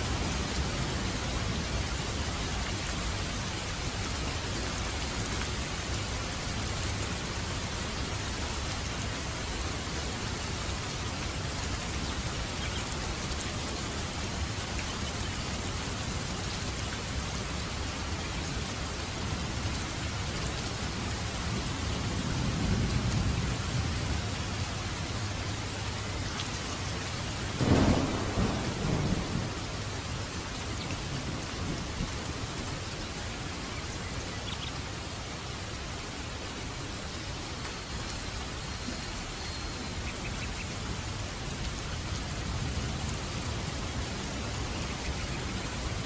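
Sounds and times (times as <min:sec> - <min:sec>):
heavy rain falling: 0:00.0 - 0:46.0
thunder rumbling: 0:27.5 - 0:32.8
thunderclap: 0:27.6 - 0:29.8.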